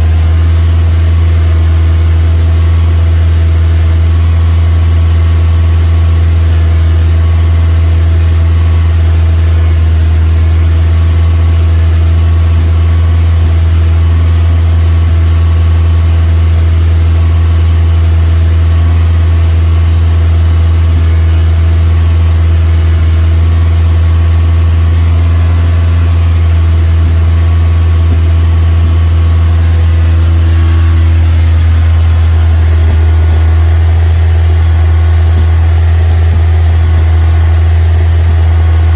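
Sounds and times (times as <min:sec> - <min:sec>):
car engine fast idle with misfire: 0:00.0 - 0:38.9.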